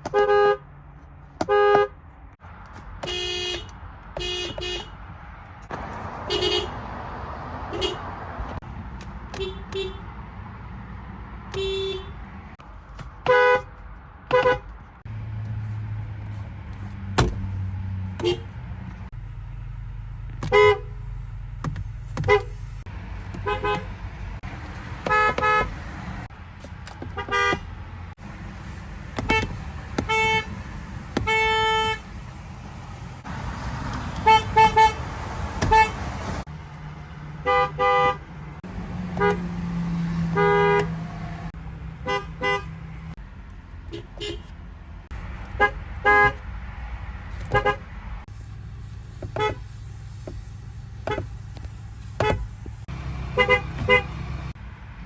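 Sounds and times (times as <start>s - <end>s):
car horns tooting: 0.0s - 0.7s, 1.4s - 2.0s, 3.0s - 5.1s, 5.7s - 6.9s, 7.6s - 8.6s, 9.2s - 10.2s, 11.5s - 14.8s, 17.1s - 19.1s, 20.4s - 21.0s, 22.2s - 22.6s, 23.3s - 26.0s, 27.0s - 27.8s, 29.0s - 32.2s, 33.9s - 36.5s, 37.4s - 38.4s, 39.0s - 41.3s, 42.0s - 43.2s, 43.9s - 44.6s, 45.4s - 46.5s, 47.4s - 48.0s, 49.2s - 49.7s, 51.0s - 51.4s, 52.1s - 54.6s.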